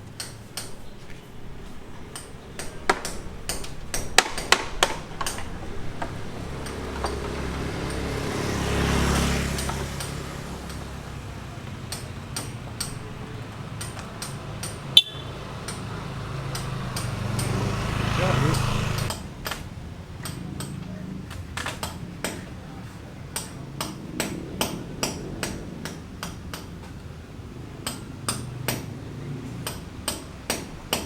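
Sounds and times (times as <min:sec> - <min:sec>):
hammer blows: 0:00.0 - 0:20.8
sharp metal knocks: 0:00.1 - 0:20.8, 0:27.8 - 0:29.0, 0:29.6 - 0:31.0.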